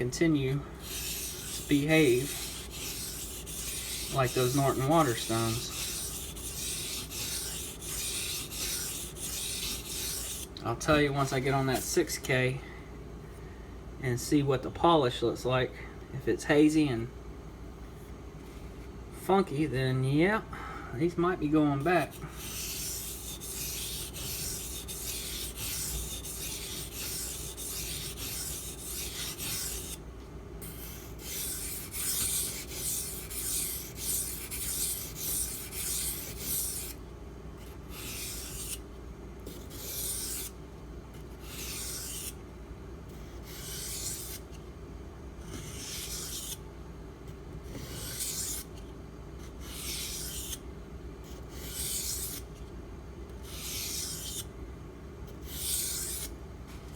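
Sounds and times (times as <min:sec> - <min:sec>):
steady low hum: 0:00.0 - 0:56.9
knife scraping on water stone: 0:00.8 - 0:10.5, 0:22.0 - 0:30.0.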